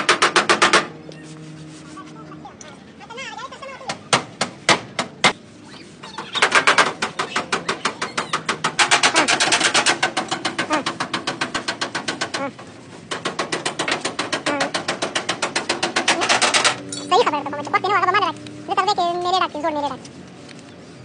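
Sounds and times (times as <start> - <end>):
rapid mechanical tapping: 0.0 - 1.0, 6.0 - 20.0.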